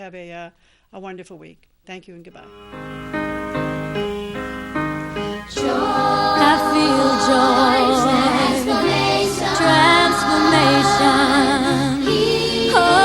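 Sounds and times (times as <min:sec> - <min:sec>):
sustained instrumental chords: 0:02.4 - 0:13.0
voices singing with vibrato: 0:05.5 - 0:13.0.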